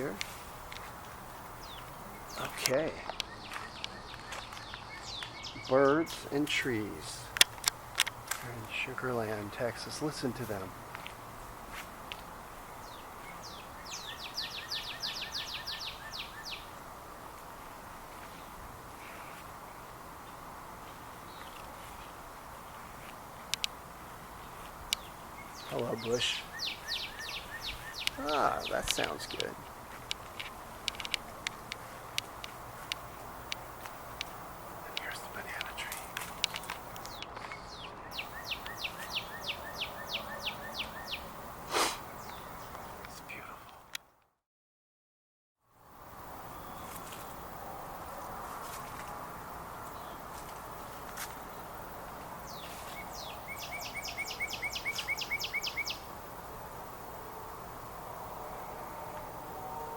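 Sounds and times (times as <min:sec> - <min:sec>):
songbird singing: 0:00.0 - 0:44.1, 0:45.8 - 0:59.9
outdoor background hiss: 0:00.0 - 0:44.2, 0:45.6 - 0:59.9
songbird whistling: 0:13.4 - 0:16.7, 0:25.5 - 0:28.2, 0:37.6 - 0:41.3, 0:52.5 - 0:56.0.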